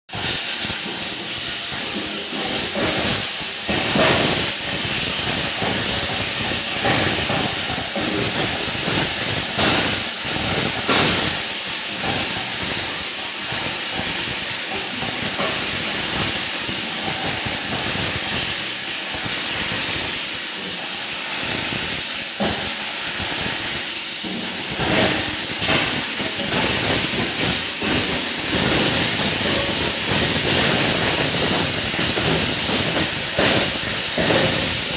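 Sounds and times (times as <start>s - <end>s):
plastic grinder rushing: 24.2s - 34.9s.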